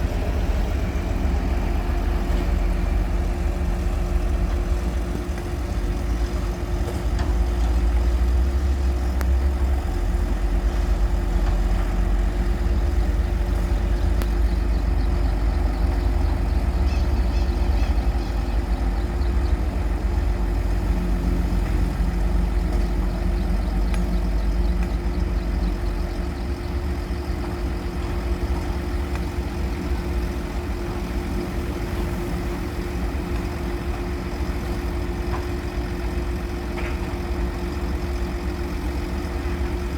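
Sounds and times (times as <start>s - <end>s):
heavy engine rumbling: 0.0s - 39.9s.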